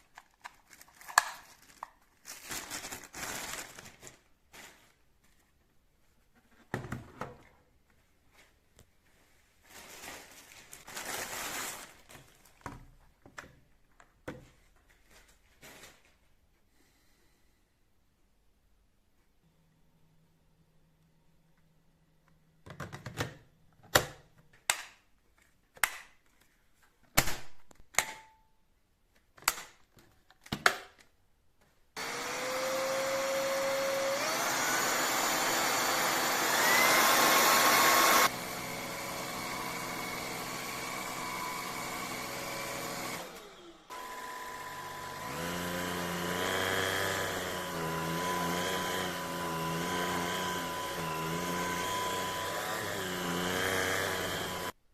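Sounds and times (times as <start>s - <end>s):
stick vacuum motor whining: 32.0s - 54.8s.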